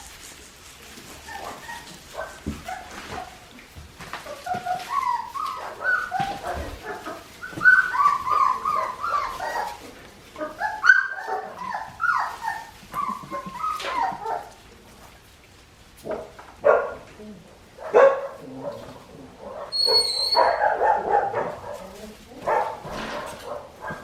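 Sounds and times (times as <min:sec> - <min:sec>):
puppies whining and yipping: 0:01.2 - 0:03.4, 0:04.2 - 0:14.6, 0:18.6 - 0:24.0.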